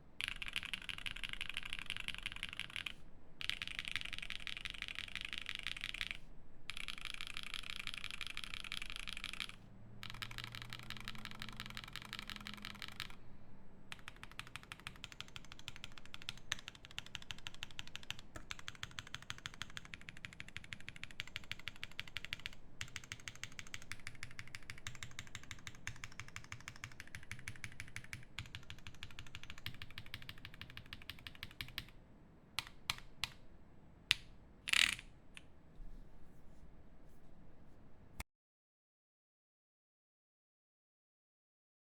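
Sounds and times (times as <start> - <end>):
fast mechanical keyboard typing: 0.2 - 13.2, 13.9 - 32.0.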